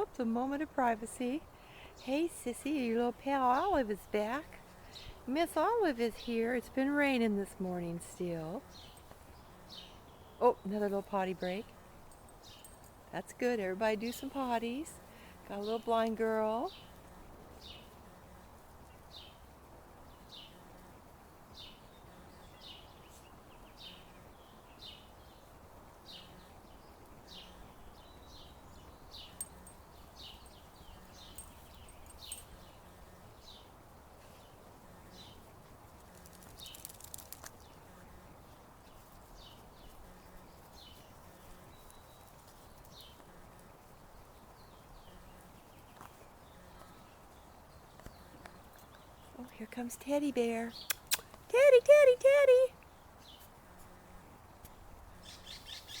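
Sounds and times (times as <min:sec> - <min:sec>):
outdoor background noise: 0:00.0 - 0:56.0
bird chirping: 0:55.2 - 0:56.0.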